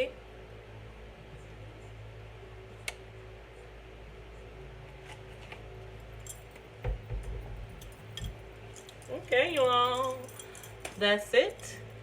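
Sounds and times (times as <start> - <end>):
steady low hum: 0.0 - 12.0
faint light clinks: 7.7 - 12.0.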